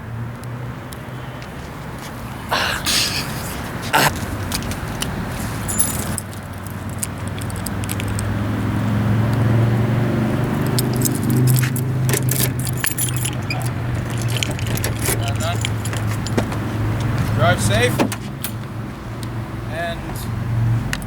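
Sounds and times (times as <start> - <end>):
car engine running: 4.6 - 18.5
keys jangling and clicking: 5.6 - 8.4, 10.4 - 17.4, 18.3 - 18.7.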